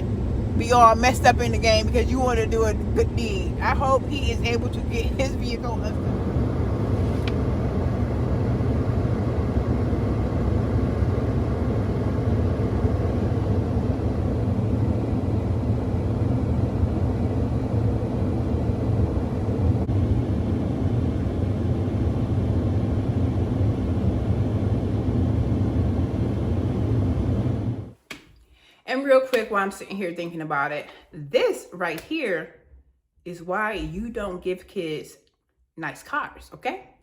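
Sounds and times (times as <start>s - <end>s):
car engine: 0.0s - 13.7s
road noise inside car: 0.0s - 27.9s.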